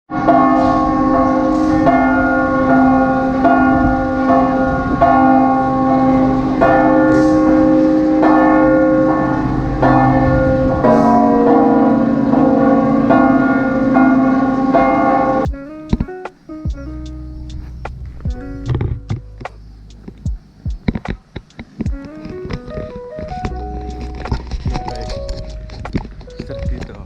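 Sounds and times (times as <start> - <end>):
large church bells pealing: 0.1 - 15.5.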